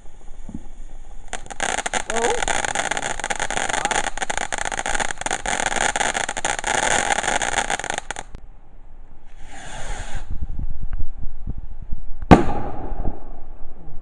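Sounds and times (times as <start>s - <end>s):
firework hissing and crackling: 0.0s - 8.4s, 9.4s - 10.3s.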